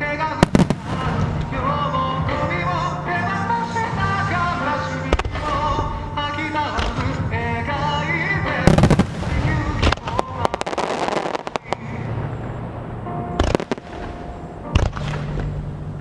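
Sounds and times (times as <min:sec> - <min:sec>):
fireworks bursting with bangs: 0:00.0 - 0:16.0
fireworks crackling: 0:00.0 - 0:16.0
show music: 0:00.0 - 0:16.0.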